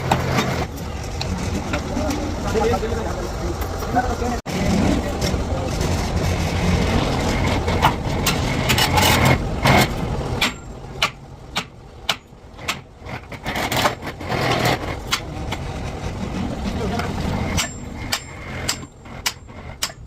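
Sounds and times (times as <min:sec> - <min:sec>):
machine engine running: 0:00.0 - 0:10.9.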